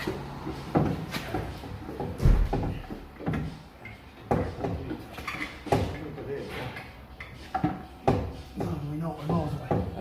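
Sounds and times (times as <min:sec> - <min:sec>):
gearbox clunking and knocking: 0:00.7 - 0:03.5.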